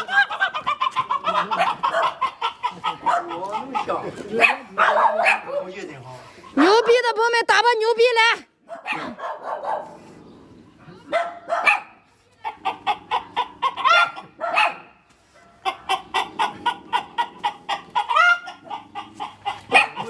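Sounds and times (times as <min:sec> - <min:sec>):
hen cackling: 0:00.0 - 0:04.2, 0:12.4 - 0:14.8, 0:15.4 - 0:20.0.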